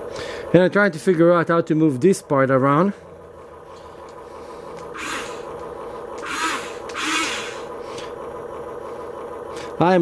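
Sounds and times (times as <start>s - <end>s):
simulated engine humming: 0.0s - 9.7s
hissing whirring bursts: 4.2s - 8.1s.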